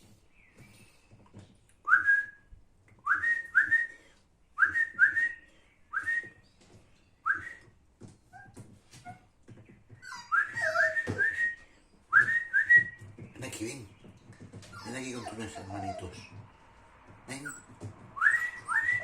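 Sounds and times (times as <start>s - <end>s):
person whistling short rising whistles: 10.4s - 13.0s.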